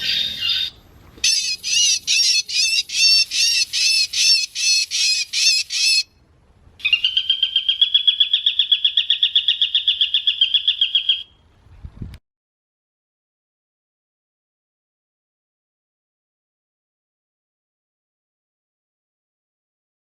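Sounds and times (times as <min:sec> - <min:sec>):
bird trill: 0:00.0 - 0:06.1, 0:06.8 - 0:11.4
sharp repeated bird calls: 0:00.0 - 0:06.1, 0:06.8 - 0:11.4.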